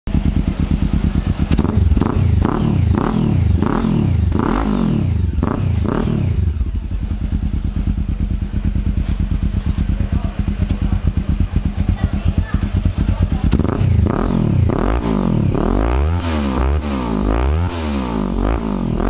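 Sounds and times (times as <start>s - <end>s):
engine idling: 0.1s - 4.4s, 5.1s - 15.6s
motorcycle engine revving: 0.1s - 19.0s.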